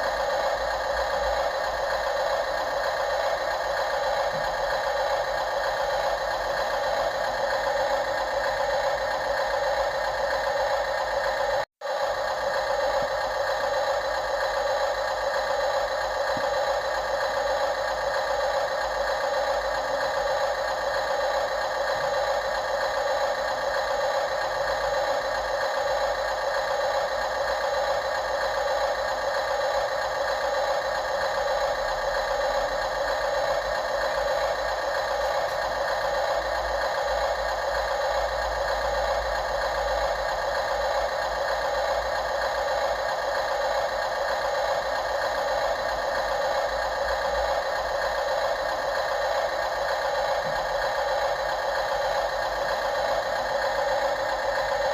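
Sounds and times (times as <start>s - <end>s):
model machinery motors whirring: 0.0s - 54.9s.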